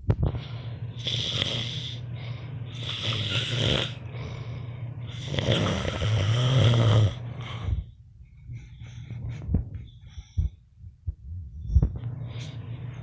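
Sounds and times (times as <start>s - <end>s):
man snoring: 1.0s - 2.0s, 2.7s - 4.0s, 5.1s - 7.8s.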